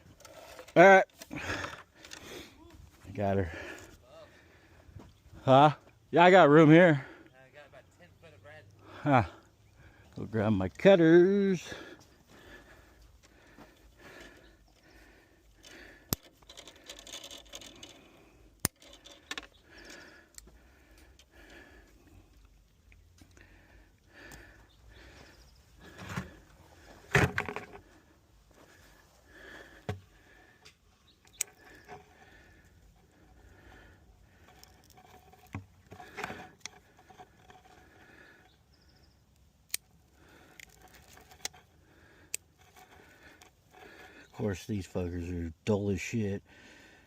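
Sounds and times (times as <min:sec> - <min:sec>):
outdoor background noise: 0:00.0 - 0:47.0
hands handling wire and tools: 0:15.5 - 0:21.3, 0:29.8 - 0:38.6, 0:39.3 - 0:44.9
small clicks and knocks: 0:15.6 - 0:21.3, 0:30.6 - 0:32.2, 0:39.6 - 0:44.2.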